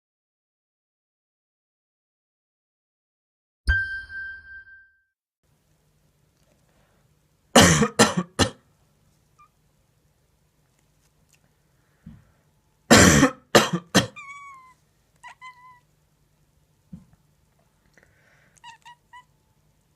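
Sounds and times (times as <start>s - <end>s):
person coughing: 7.6s - 8.6s, 12.9s - 14.2s
cat grumbling meows: 14.0s - 15.9s, 18.6s - 19.3s.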